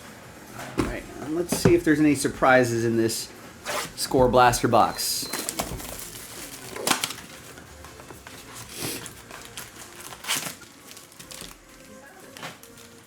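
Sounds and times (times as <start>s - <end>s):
cardboard and foil wrapper crinkles: 5.2s - 13.0s.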